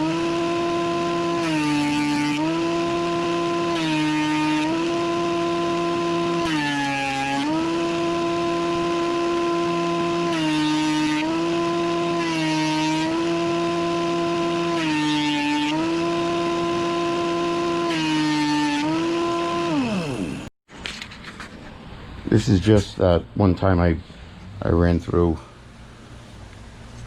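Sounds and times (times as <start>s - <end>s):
planer motor whining: 0.0s - 20.5s.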